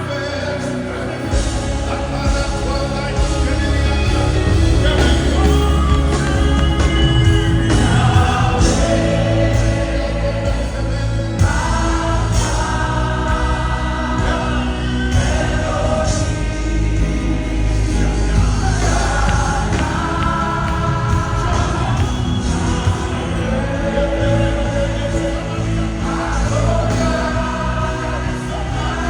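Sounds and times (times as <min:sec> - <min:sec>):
bass band accompaniment: 0:00.0 - 0:29.0
choir singing sustained notes: 0:00.0 - 0:29.0.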